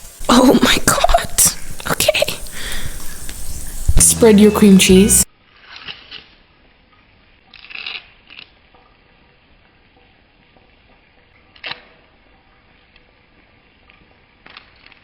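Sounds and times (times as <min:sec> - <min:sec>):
knife scraping cream cheese: 0:07.5 - 0:08.5.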